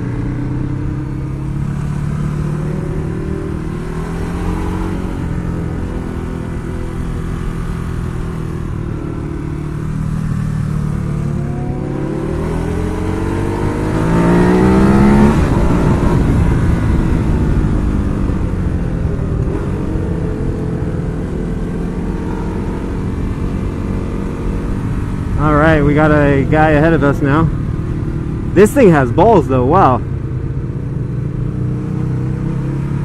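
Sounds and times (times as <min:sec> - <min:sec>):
motorcycle engine revving: 0:00.0 - 0:33.0
wind noise: 0:13.2 - 0:21.4.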